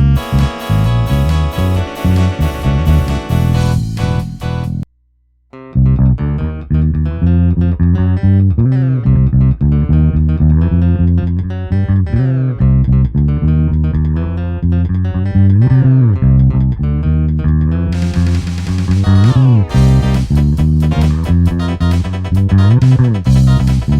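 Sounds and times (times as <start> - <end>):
electric bass guitar plucked notes: 0.0 - 4.8, 5.6 - 23.9.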